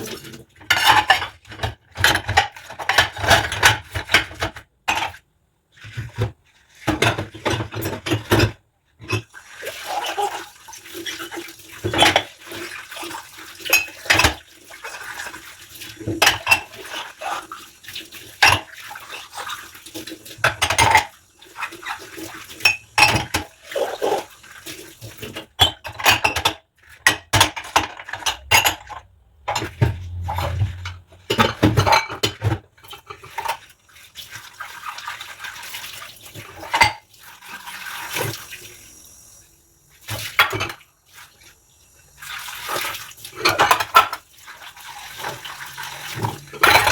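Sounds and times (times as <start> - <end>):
dishes and cutlery clinking: 0.0 - 5.2, 16.1 - 16.8, 20.4 - 21.1, 22.6 - 23.5, 25.2 - 33.6, 43.4 - 44.2, 46.1 - 46.9.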